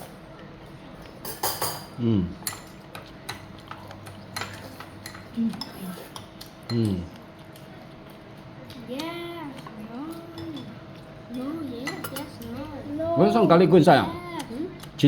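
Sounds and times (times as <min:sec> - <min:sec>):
dishes and spoons clinking: 0:01.0 - 0:07.1, 0:11.8 - 0:12.9.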